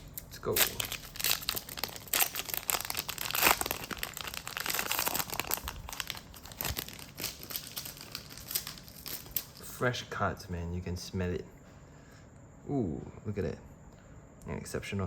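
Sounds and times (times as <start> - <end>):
foil wrapper tearing and crinkling: 0.0 - 9.6.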